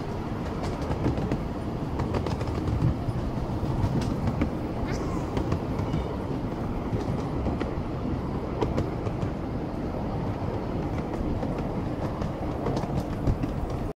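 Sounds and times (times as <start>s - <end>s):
train rumbling on rails: 0.0s - 14.0s
sharp clicks and clacks: 0.4s - 6.2s, 8.5s - 9.4s, 10.2s - 13.9s.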